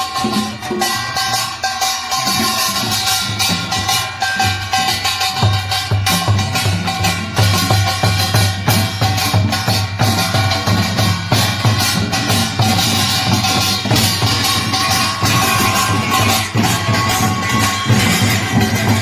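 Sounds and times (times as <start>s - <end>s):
drum beats: 0.0s - 19.0s
metal gongs striking: 0.0s - 19.0s.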